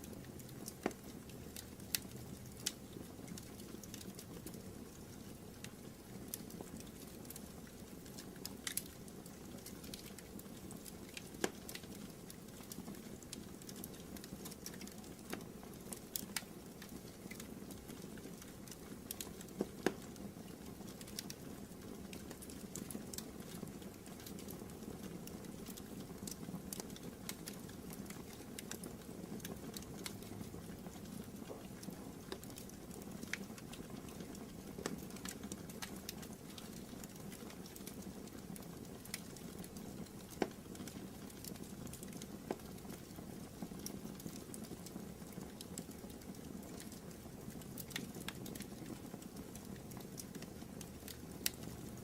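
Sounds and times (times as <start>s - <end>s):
fire crackling and popping: 0.0s - 52.0s.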